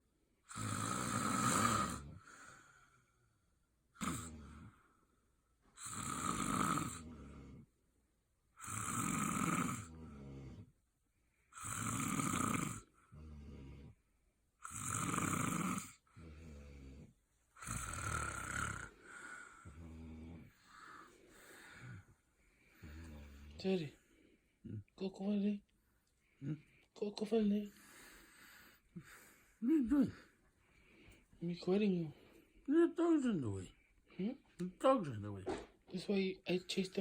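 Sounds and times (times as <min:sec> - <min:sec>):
person snoring: 0:00.5 - 0:03.2, 0:04.0 - 0:04.9, 0:05.8 - 0:07.7, 0:08.6 - 0:10.7, 0:11.5 - 0:14.0, 0:14.6 - 0:24.0.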